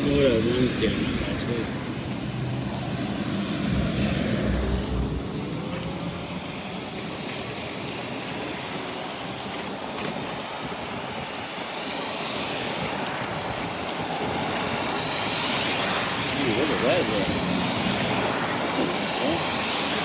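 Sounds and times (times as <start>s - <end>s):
deep rumble: 0.0s - 7.0s
vehicle road and wind noise: 0.0s - 20.0s.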